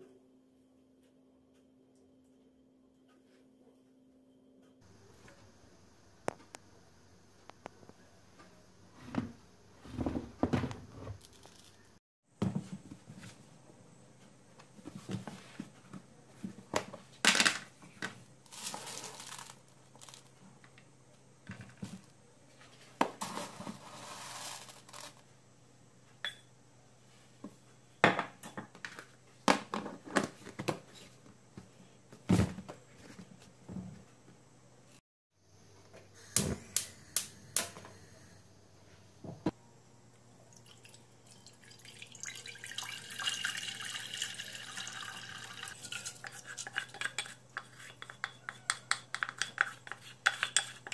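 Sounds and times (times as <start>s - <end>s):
crinkling and rustling: 9.8s - 12.0s, 18.0s - 20.8s, 21.6s - 25.2s.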